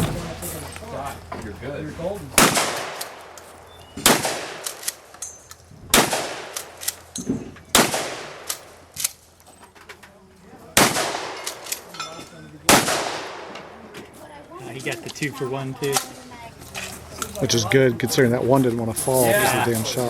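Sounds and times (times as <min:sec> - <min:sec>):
shotgun blasts with echo: 0:02.4 - 0:03.4, 0:04.0 - 0:05.1, 0:05.9 - 0:07.1, 0:07.7 - 0:08.8, 0:10.8 - 0:11.9, 0:12.7 - 0:13.8.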